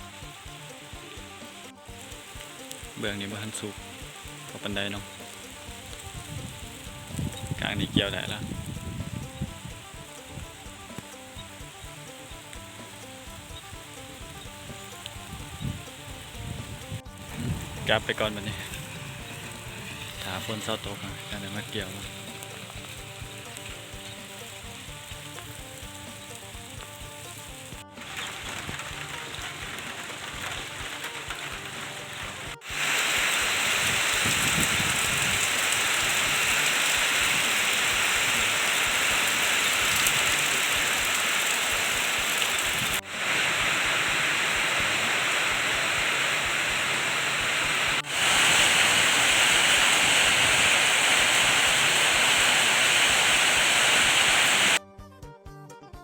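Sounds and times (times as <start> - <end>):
heavy rain pouring: 0.0 - 54.8.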